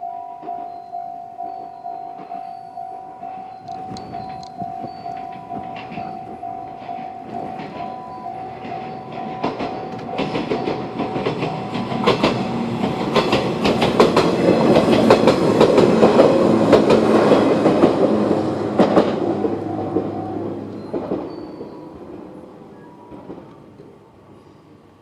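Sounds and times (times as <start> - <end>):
electronic crossing warning bell: 0.0 - 12.6, 17.1 - 23.6
train wheels clacking over rail joints: 3.2 - 24.0.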